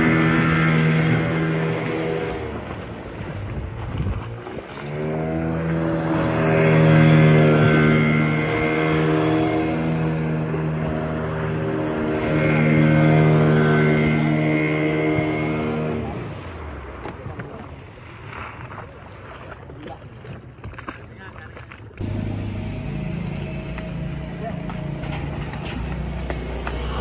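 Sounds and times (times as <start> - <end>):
engine revving: 0.0 - 3.1, 4.3 - 16.8, 22.0 - 27.0.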